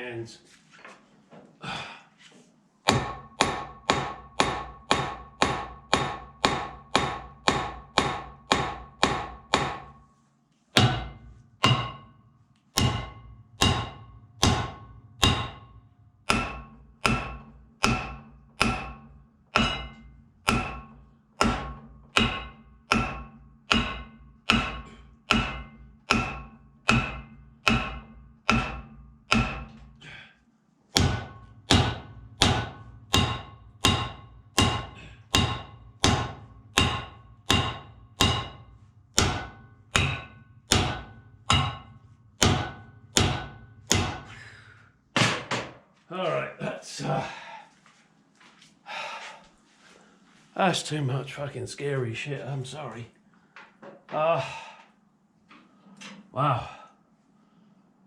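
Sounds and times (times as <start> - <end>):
hammer ringing on metal hub: 2.9 - 10.1, 10.8 - 30.2, 31.0 - 45.4.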